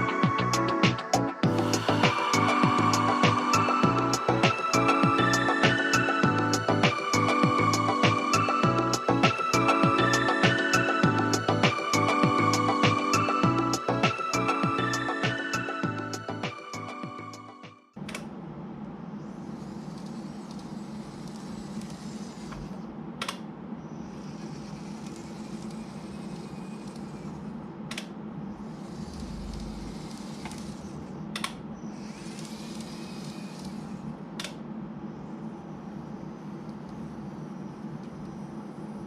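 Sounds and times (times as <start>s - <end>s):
high hiss: 0.0s - 17.3s
model tram motor hum: 19.2s - 39.0s.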